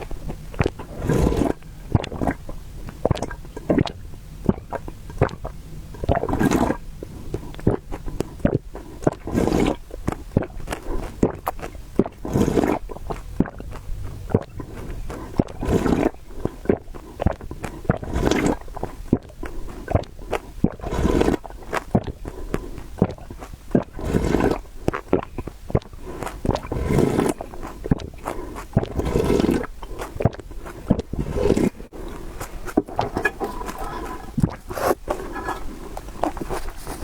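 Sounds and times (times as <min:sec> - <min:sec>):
noodles being slurped: 0:00.0 - 0:37.0
wet chewing: 0:00.0 - 0:37.0.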